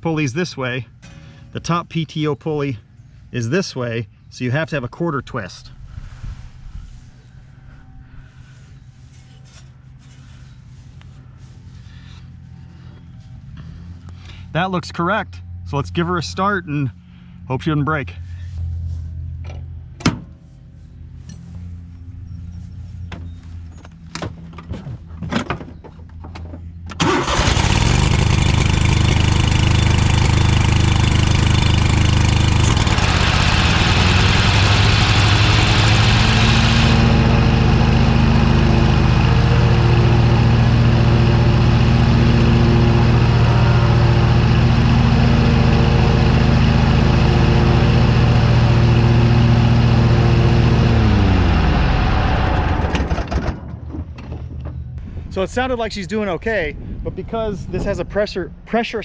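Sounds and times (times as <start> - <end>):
lawn tractor engine running: 7.0 - 14.6, 26.0 - 54.9
mower blades turning: 23.8 - 51.9.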